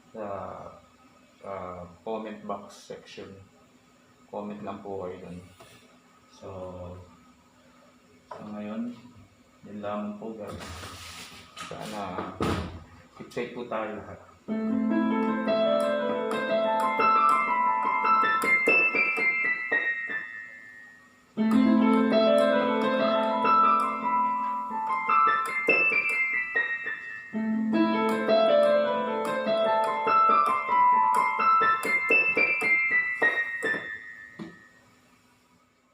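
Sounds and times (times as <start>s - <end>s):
fast piano melody on keyboard: 14.5s - 34.7s.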